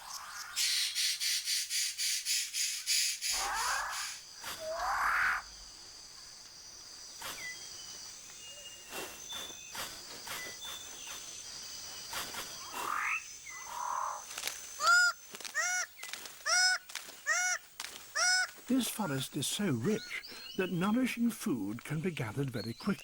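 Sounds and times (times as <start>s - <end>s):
forest birds calling: 0.0s - 23.0s
insects chirring: 0.0s - 23.0s
bird nasal calls: 0.5s - 5.5s, 12.1s - 14.2s.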